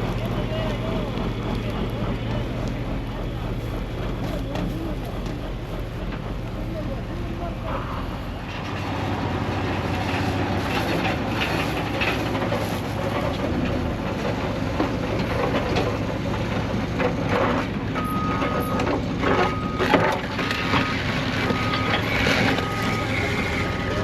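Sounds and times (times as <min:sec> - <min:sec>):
knocks and scraping: 0:00.0 - 0:17.9
heavy diesel machinery running: 0:00.0 - 0:24.0
reversing alarm beeping: 0:17.9 - 0:24.0.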